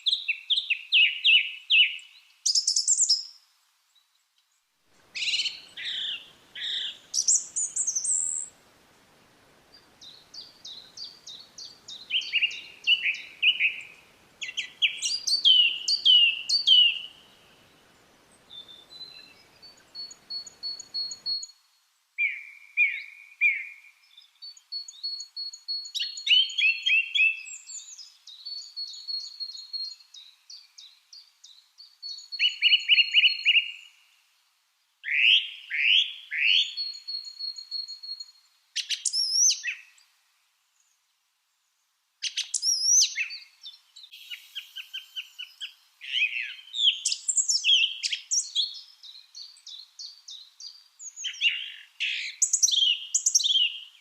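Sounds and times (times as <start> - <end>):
lovebirds chirping: 5.0 - 21.5, 42.2 - 54.0.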